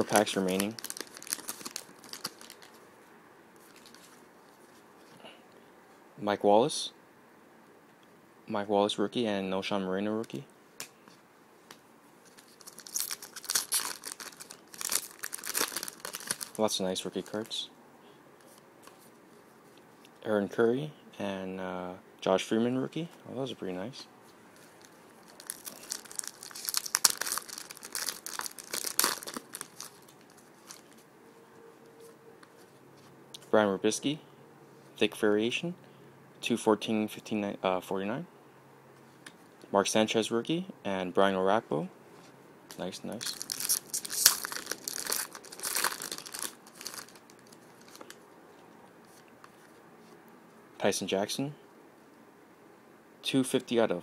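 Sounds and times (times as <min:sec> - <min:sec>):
card wrapper torn and crinkled: 0:00.0 - 0:02.8, 0:12.2 - 0:17.5, 0:24.8 - 0:31.0, 0:43.2 - 0:48.2.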